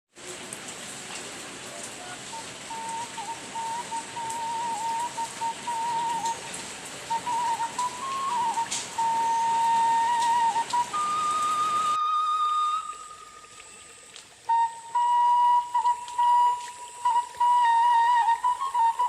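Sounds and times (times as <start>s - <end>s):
sharp water drips: 0.1s - 19.0s
steady rain: 0.1s - 19.0s
whistle-like slow melody: 2.0s - 19.0s.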